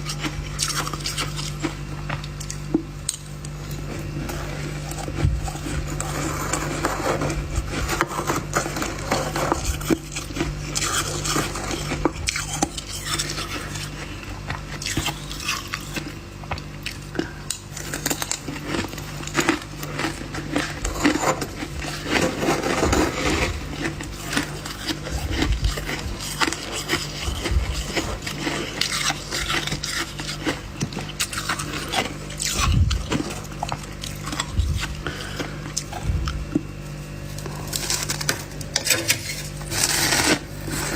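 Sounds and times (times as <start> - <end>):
steady low hum: 0.0 - 40.9
ice scraped and crunched: 3.9 - 13.9, 17.8 - 30.6, 37.5 - 40.9.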